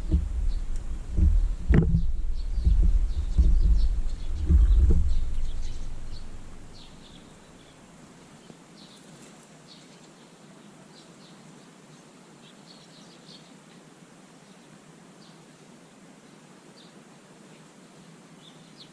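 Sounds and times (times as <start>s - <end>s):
low rumble: 0.0s - 7.2s
small birds chirping: 0.0s - 15.6s, 16.2s - 18.9s.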